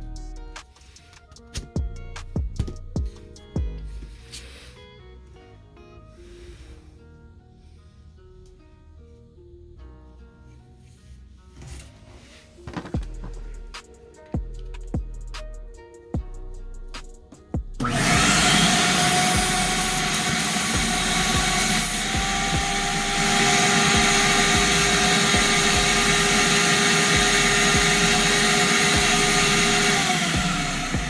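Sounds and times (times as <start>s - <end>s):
vacuum cleaner running: 17.8s - 31.0s.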